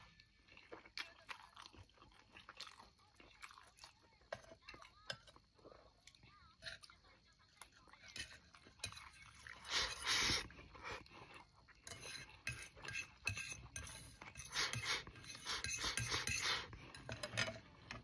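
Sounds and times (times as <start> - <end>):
utensils clinking on a dish: 8.0 - 10.5, 11.8 - 18.0.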